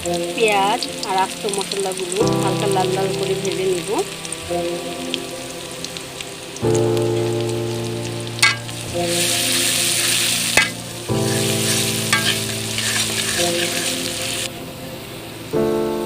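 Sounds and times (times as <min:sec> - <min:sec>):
onion sizzling in hot oil: 0:00.2 - 0:14.8
spatula knocking against pan: 0:08.4 - 0:08.7, 0:12.1 - 0:12.4.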